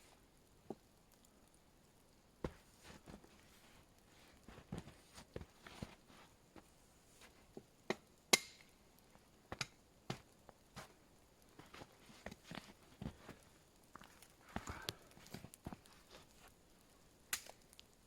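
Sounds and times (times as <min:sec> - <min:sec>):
sticks knocking and cracking: 0:07.6 - 0:08.7, 0:09.5 - 0:11.0, 0:17.3 - 0:17.6.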